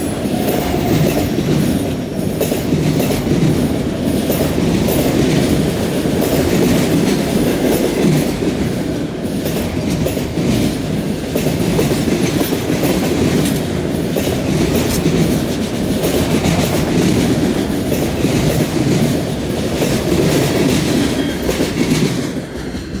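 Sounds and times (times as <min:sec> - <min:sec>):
train wheels rumbling on rail: 0:00.0 - 0:23.0
wheels clacking on rail joints: 0:00.0 - 0:23.0.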